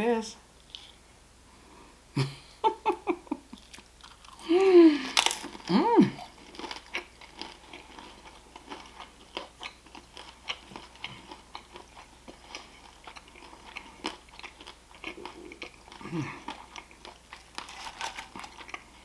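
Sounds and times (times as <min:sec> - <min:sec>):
person chewing food: 0:03.5 - 0:19.0.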